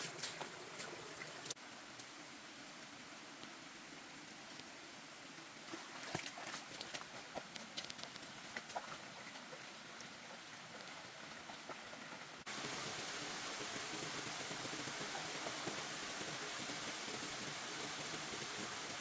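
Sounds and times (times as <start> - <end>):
steady rain: 12.4 - 19.0.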